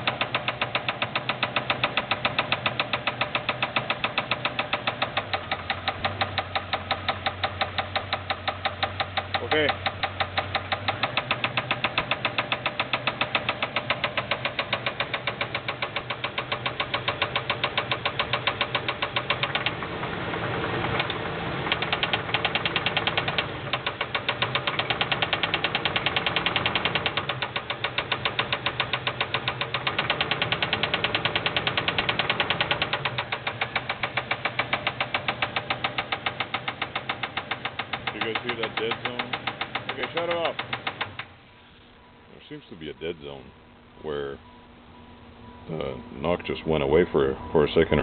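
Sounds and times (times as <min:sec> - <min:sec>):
engine with heavy rod knock: 0:00.0 - 0:41.4.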